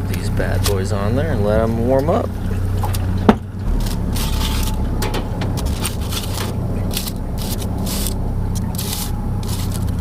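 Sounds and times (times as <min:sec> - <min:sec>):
boat engine running: 0:00.0 - 0:10.0
crackling scraping noises: 0:02.4 - 0:10.0.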